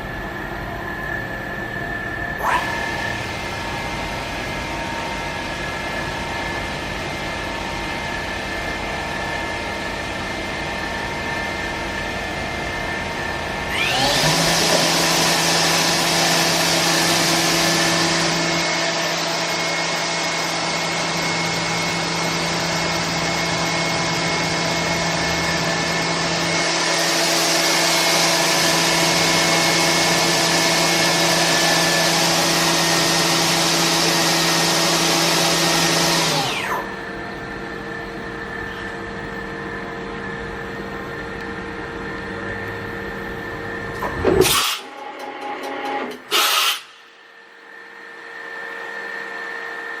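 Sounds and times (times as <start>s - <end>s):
machine hum: 0.0s - 50.0s
short loud bursts: 46.3s - 47.0s
machine loud steady hiss: 46.3s - 47.2s.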